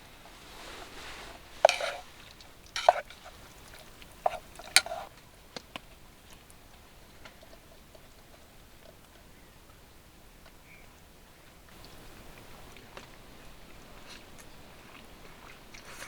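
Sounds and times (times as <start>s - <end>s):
short scraping rustles: 0.0s - 5.1s.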